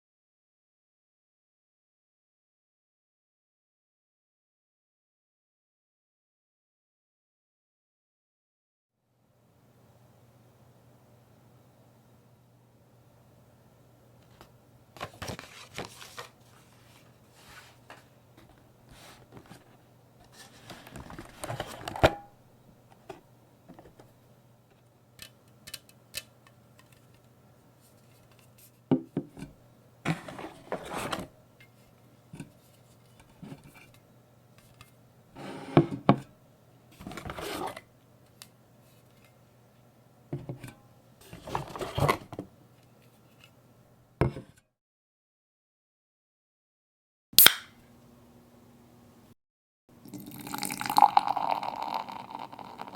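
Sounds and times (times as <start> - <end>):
packaging rustling and scraping: 15.0 - 18.1, 19.0 - 22.0, 30.1 - 31.3.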